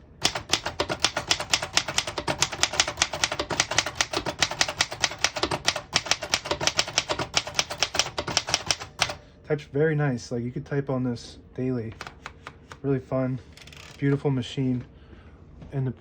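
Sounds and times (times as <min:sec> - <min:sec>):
manual typewriter typing: 0:00.0 - 0:09.2.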